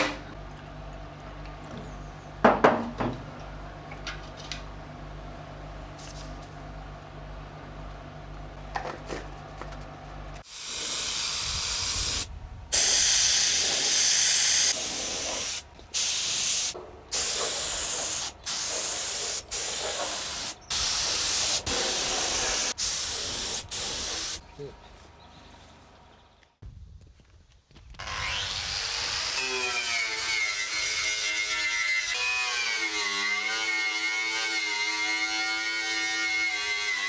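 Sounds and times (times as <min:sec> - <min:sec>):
paint spray gun spraying: 0:10.4 - 0:24.4.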